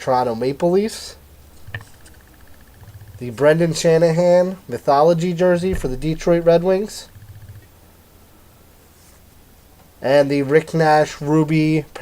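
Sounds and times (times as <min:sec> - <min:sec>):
room noise and hiss: 0:00.0 - 0:12.0
low hum: 0:01.1 - 0:08.7.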